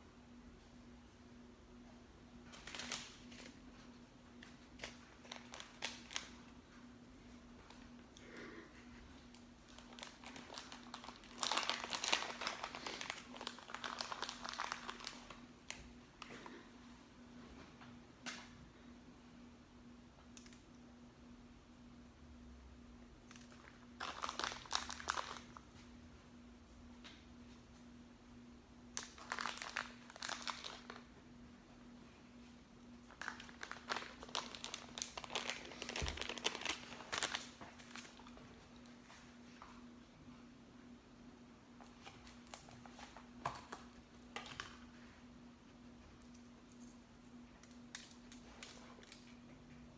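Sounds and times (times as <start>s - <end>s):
faint steady hum: 0.0s - 49.9s
aluminium foil crinkling: 2.4s - 6.6s, 7.5s - 16.5s, 23.2s - 25.9s, 28.9s - 31.1s, 33.0s - 39.2s, 41.8s - 45.0s, 47.6s - 49.4s.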